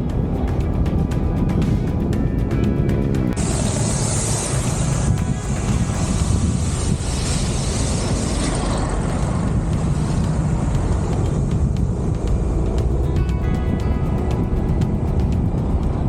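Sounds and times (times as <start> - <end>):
motorcycle engine and tyres: 0.0 - 16.0
wind buffeting microphone: 0.0 - 16.0.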